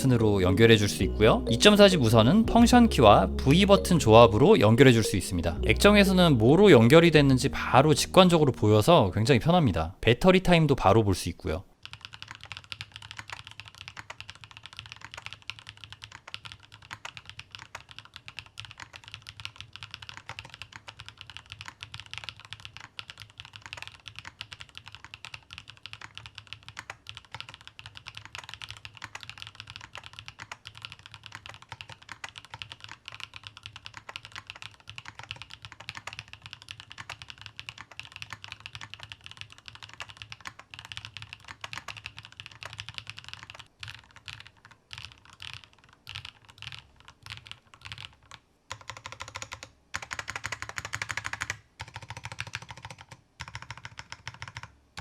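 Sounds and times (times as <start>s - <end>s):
mechanical keyboard typing: 11.4s - 55.0s.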